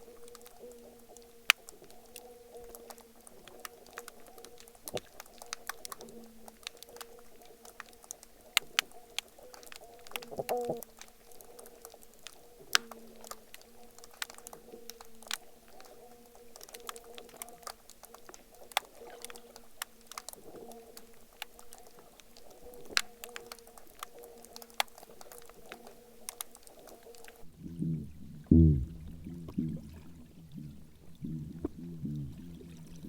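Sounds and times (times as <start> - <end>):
sharp clicks and crackles: 0.0 - 27.5
low steady hum: 27.4 - 33.0
low pulse: 27.5 - 33.0.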